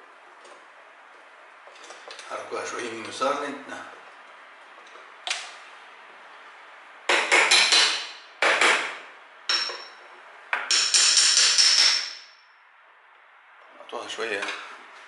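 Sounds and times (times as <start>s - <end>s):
high metallic ring: 9.5s - 10.1s, 10.7s - 12.6s.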